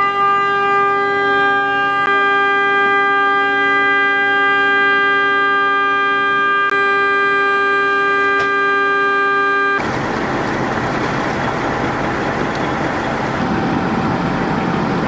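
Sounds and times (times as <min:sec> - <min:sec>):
vehicle horn steady note: 0:00.0 - 0:09.8
loud rushing noise: 0:09.8 - 0:15.0.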